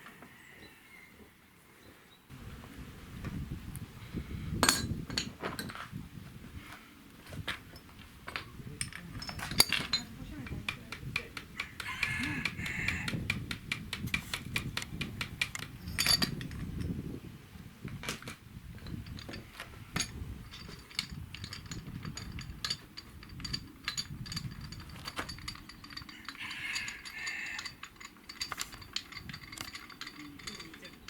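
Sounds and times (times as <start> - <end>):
light metallic clinks: 7.7 - 13.1, 15.4 - 16.9, 18.8 - 31.0.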